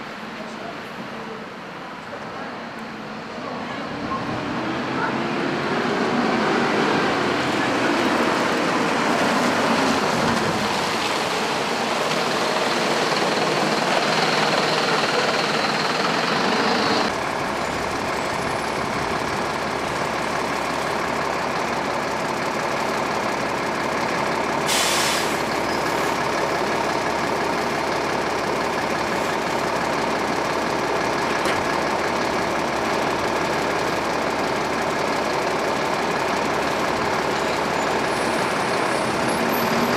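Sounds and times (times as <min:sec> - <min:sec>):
bus engines and road noise: 0:00.0 - 0:39.9
air brake hiss: 0:24.7 - 0:25.5.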